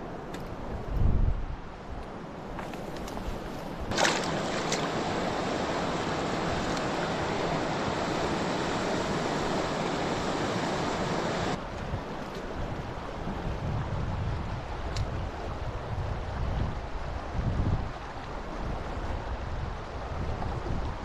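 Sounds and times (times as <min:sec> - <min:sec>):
river water rushing: 0:03.7 - 0:13.5.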